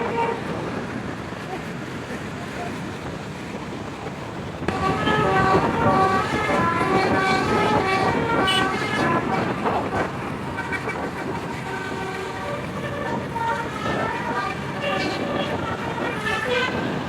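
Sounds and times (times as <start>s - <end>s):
multi-tone bus horn tune: 0.0s - 0.9s, 4.7s - 17.0s
vehicle noise: 0.0s - 17.0s.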